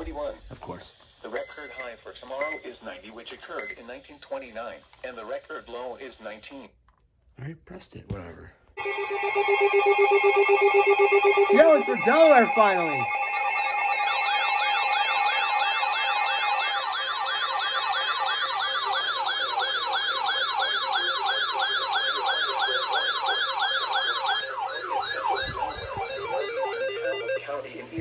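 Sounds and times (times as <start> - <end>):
warbling siren alarm: 8.8 - 28.0.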